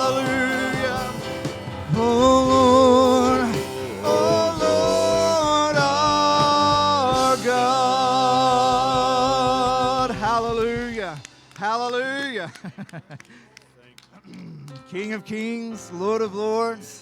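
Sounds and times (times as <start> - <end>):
voices singing long notes: 0.0 - 12.0
band playing worship music: 0.0 - 12.9.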